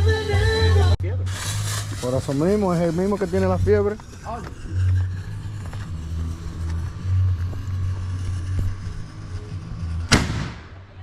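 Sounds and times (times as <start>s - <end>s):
deep bass music: 0.0s - 10.9s
firework bang: 10.0s - 10.9s.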